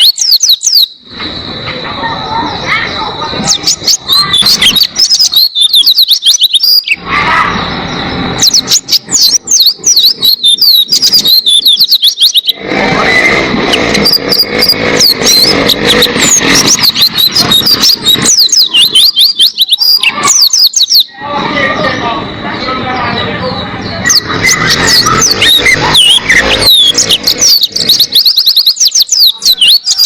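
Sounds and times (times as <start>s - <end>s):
bird singing high chirps: 0.0s - 30.0s.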